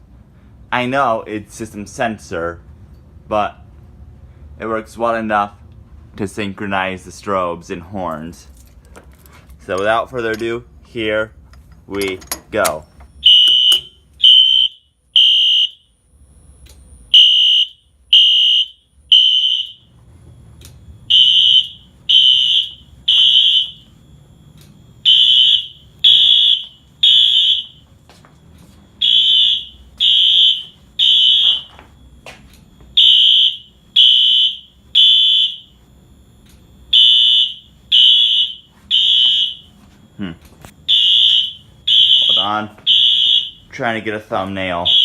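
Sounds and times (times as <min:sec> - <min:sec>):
fire alarm horn blasts: 0:13.1 - 0:20.2, 0:20.9 - 0:45.0.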